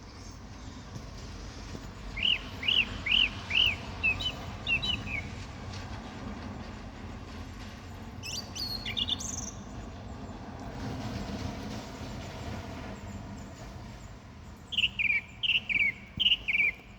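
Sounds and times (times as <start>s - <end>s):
bird whistling: 2.2s - 5.3s, 14.7s - 16.9s.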